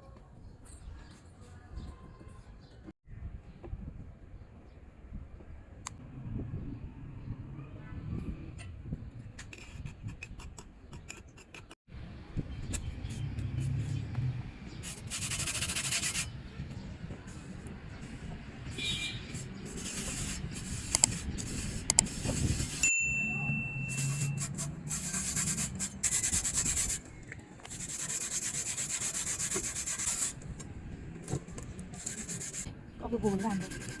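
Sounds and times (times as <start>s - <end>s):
abrasive scrubbing on steel blade: 14.9s - 16.3s
steady high tone: 22.8s - 24.6s.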